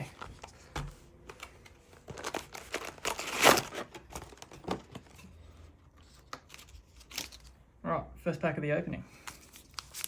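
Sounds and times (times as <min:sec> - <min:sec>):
foil wrapper tearing and crinkling: 0:02.2 - 0:04.5.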